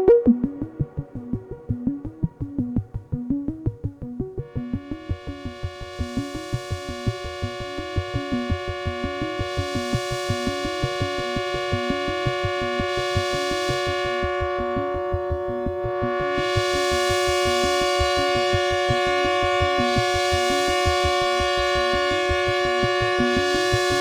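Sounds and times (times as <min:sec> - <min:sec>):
held synth pad chord: 0:00.0 - 0:24.0
pulsing sawtooth synth line: 0:00.0 - 0:24.0.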